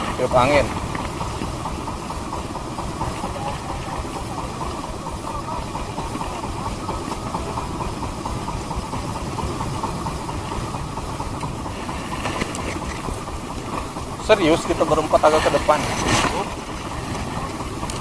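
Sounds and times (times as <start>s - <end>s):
boat engine running: 0.0s - 18.0s.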